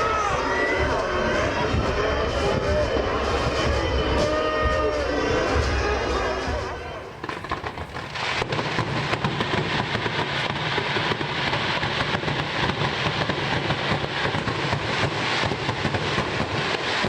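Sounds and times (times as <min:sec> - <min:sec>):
fireworks crackling: 0:06.4 - 0:17.0.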